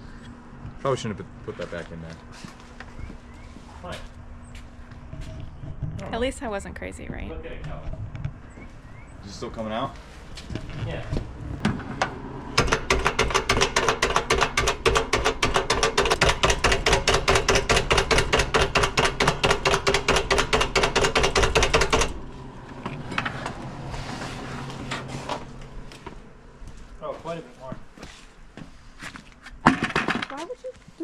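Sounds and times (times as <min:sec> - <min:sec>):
rapid metallic tapping: 0:12.6 - 0:22.2.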